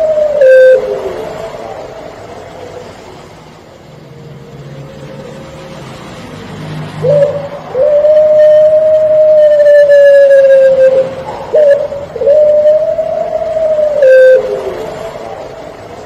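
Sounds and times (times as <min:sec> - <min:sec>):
dove cooing: 0:00.0 - 0:02.9, 0:07.0 - 0:16.0.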